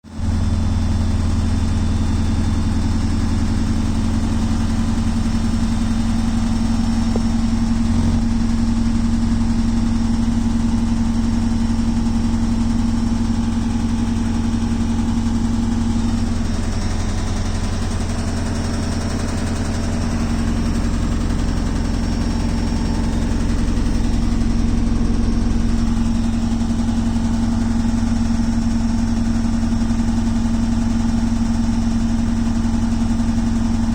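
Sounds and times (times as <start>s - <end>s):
washing machine humming: 0.1s - 33.9s
washing machine rattling: 15.5s - 29.1s.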